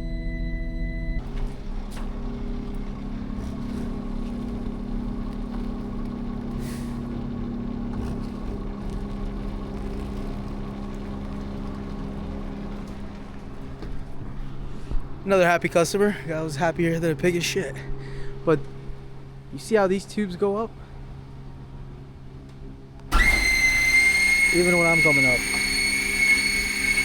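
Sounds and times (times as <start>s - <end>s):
diesel truck engine idling: 0.0s - 15.0s.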